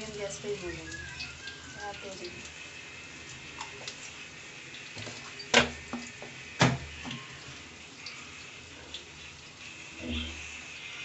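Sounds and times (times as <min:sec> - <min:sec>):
onions sizzling in hot oil: 0:00.0 - 0:11.0.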